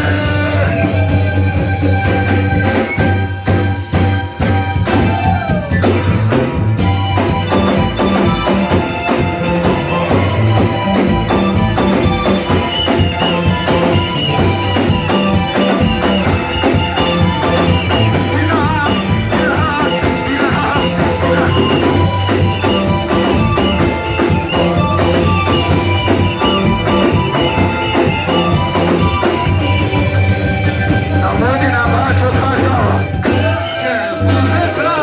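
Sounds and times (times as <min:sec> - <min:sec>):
drum kit steady beat: 0:00.0 - 0:35.0
live worship band music: 0:00.0 - 0:35.0.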